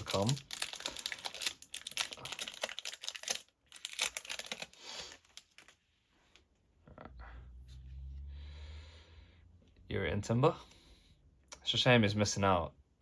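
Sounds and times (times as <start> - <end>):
foil wrapper crinkling: 0.0 - 5.8.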